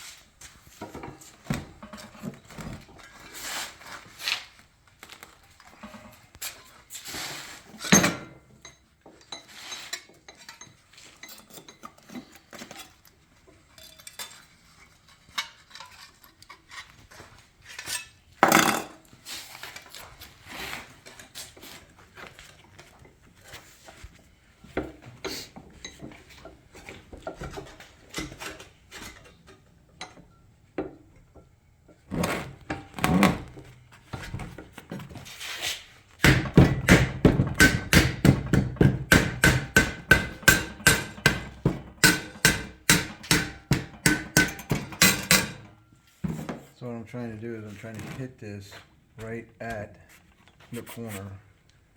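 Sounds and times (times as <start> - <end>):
metallic clinks and knocks: 13.6 - 16.8.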